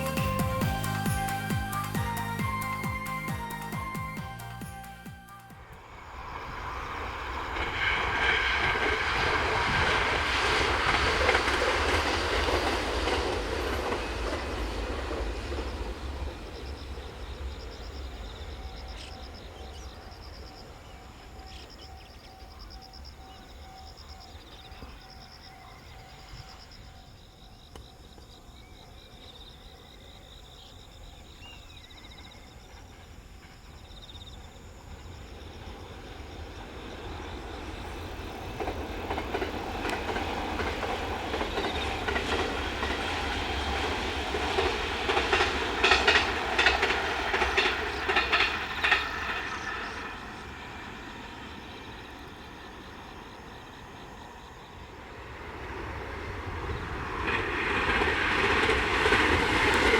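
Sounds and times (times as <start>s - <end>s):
train passing: 0.0s - 59.9s
wheels clicking over rail joints: 7.0s - 18.2s, 36.7s - 50.8s, 55.6s - 59.9s.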